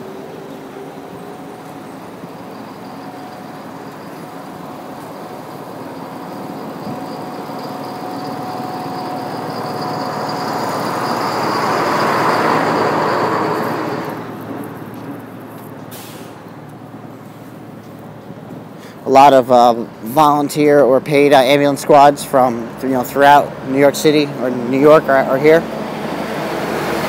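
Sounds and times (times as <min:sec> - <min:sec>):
vehicle driving past: 0:00.0 - 0:15.0, 0:23.4 - 0:27.0.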